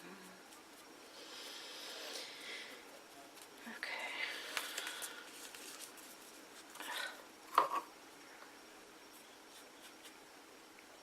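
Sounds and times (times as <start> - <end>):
paper rustling: 4.5 - 6.8.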